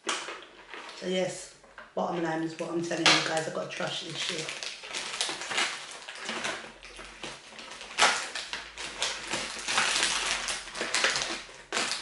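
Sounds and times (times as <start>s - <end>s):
crunching and crackling eating: 3.9s - 12.0s.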